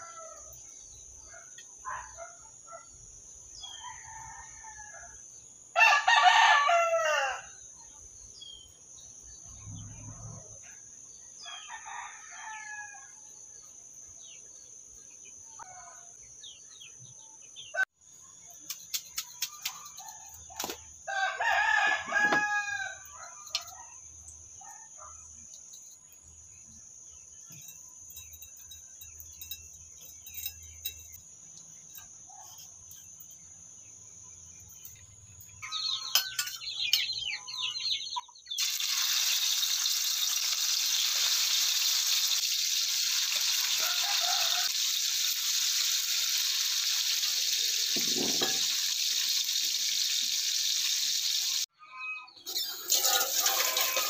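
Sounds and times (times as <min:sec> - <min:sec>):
rooster crowing: 0:00.0 - 0:00.6, 0:03.6 - 0:05.2, 0:05.8 - 0:07.6, 0:11.4 - 0:13.2, 0:21.1 - 0:23.9, 0:43.6 - 0:44.9
tap running water: 0:44.8 - 0:51.6, 0:52.5 - 0:54.0.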